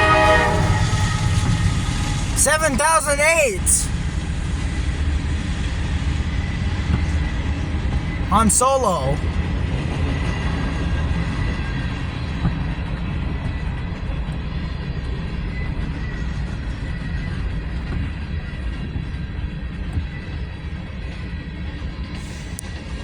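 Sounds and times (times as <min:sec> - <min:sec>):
freight train rumbling past: 0:00.0 - 0:02.4.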